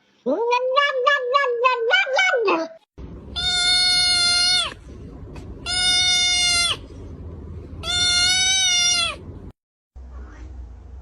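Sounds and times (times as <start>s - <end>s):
animal crying out: 0.3s - 4.8s, 5.6s - 6.9s, 7.8s - 9.3s.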